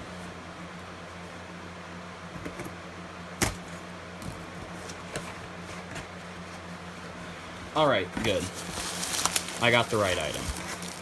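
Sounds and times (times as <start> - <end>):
cardboard box clicks and rustles: 8.2 - 11.0.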